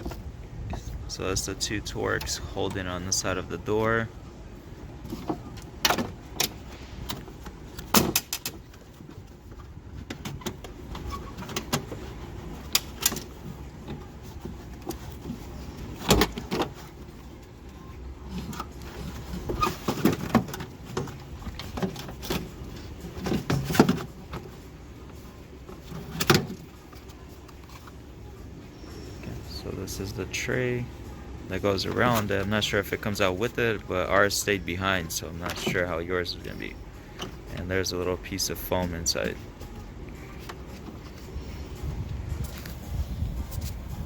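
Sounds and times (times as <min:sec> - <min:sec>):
clicks and rattles inside car door: 0:05.0 - 0:17.5, 0:18.3 - 0:28.0.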